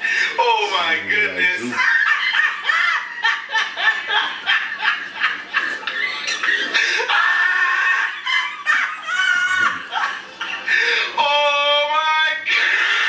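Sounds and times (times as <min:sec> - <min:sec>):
person laughing hard: 0:01.3 - 0:11.2.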